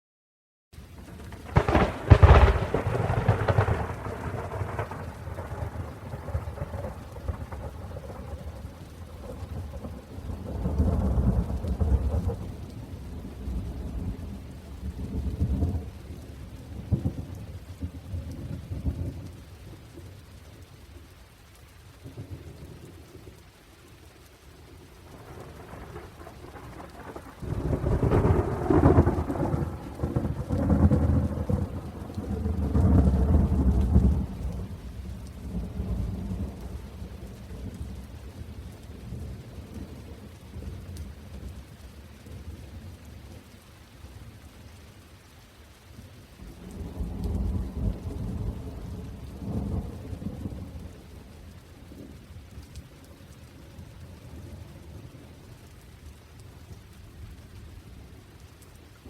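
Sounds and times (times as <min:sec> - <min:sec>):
steady rain: 0:00.7 - 0:59.0
thunder rumbling: 0:01.0 - 0:19.4, 0:25.0 - 0:41.5, 0:46.4 - 0:52.3.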